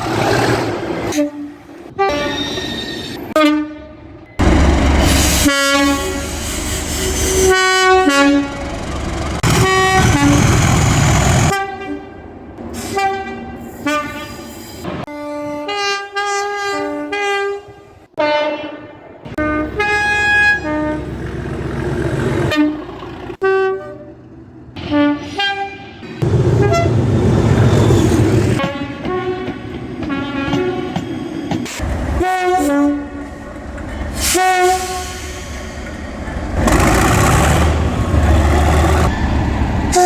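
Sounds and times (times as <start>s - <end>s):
passing locomotive: 0.0s - 40.0s
locomotive horn two-tone blasts: 3.3s - 3.9s, 5.0s - 8.8s, 9.4s - 10.5s, 12.8s - 21.2s, 24.8s - 27.1s, 32.2s - 33.2s, 34.2s - 35.2s.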